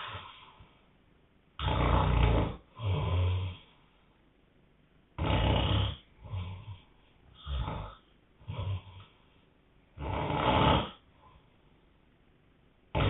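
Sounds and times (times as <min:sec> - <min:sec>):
quiet breaths: 0:00.0 - 0:12.1
man snoring: 0:01.6 - 0:03.7, 0:05.2 - 0:09.1, 0:10.0 - 0:11.1.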